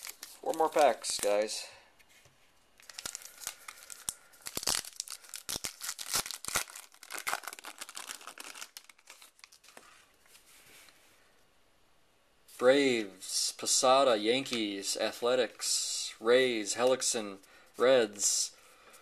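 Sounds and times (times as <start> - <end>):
card wrapper crinkling: 0.0 - 1.5, 2.8 - 9.8.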